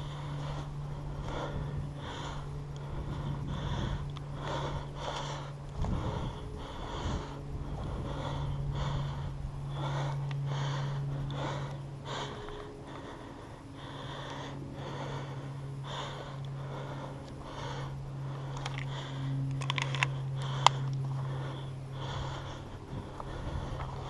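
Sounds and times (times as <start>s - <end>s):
heavy breathing: 0.0s - 24.0s
steady low hum: 0.0s - 24.0s
sharp clicks: 18.5s - 21.1s.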